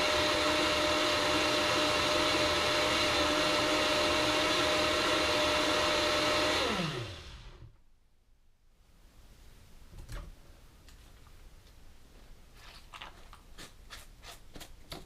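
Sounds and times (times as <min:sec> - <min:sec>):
blender motor whining: 0:00.0 - 0:07.7.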